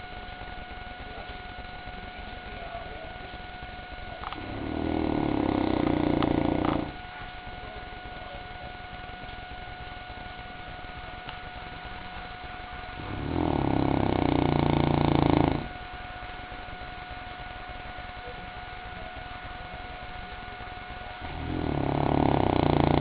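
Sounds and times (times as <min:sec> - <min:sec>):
dog snoring: 0:04.2 - 0:07.0, 0:13.0 - 0:15.8, 0:21.2 - 0:23.0.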